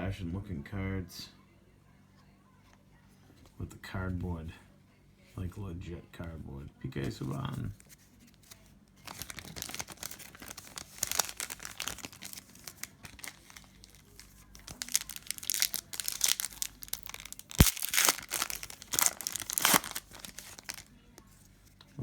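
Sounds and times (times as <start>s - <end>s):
wrapper crinkling and tearing: 8.3s - 21.4s.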